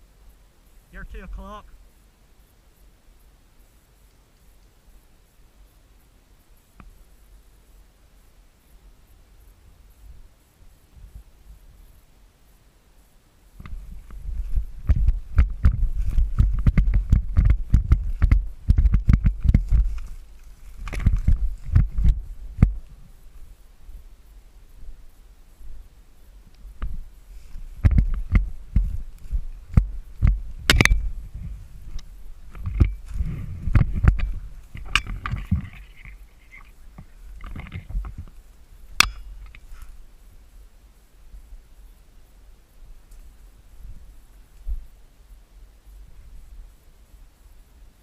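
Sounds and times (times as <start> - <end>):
rustling and soft knocks: 13.6 - 23.2, 26.5 - 40.0
running footsteps thudding: 13.7 - 22.8, 26.8 - 31.8, 32.5 - 35.7
sharp loud click: 30.7 - 31.1, 39.0 - 39.6.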